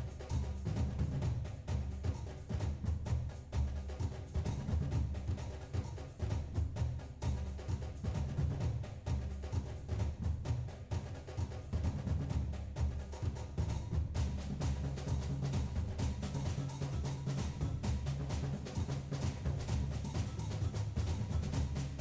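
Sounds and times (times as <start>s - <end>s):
music with drums and heavy bass: 13.8s - 22.0s.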